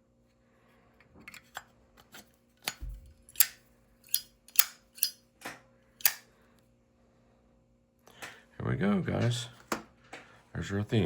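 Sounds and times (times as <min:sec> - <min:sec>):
metal lighter cases clicking: 0:02.6 - 0:05.2, 0:06.0 - 0:06.2.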